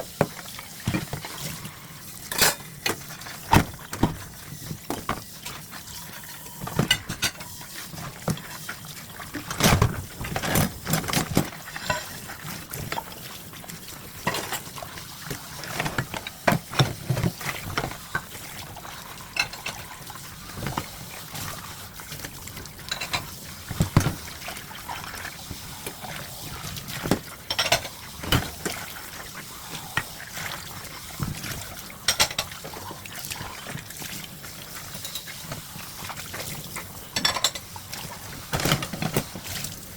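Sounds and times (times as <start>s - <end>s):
water running and splashing: 0.0s - 39.9s
dishes clinking and knocking: 2.3s - 4.2s, 6.7s - 7.4s, 14.3s - 14.7s, 22.9s - 24.2s, 27.1s - 28.6s, 37.2s - 37.7s.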